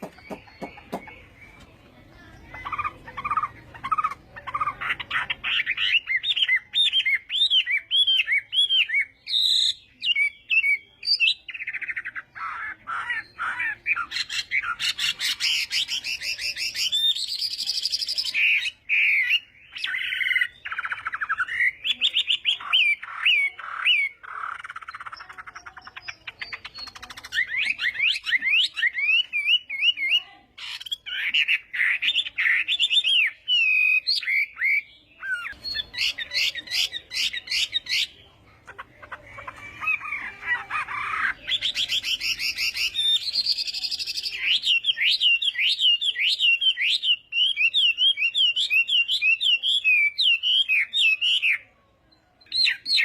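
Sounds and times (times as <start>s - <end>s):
songbird singing varied song: 0.0s - 53.0s.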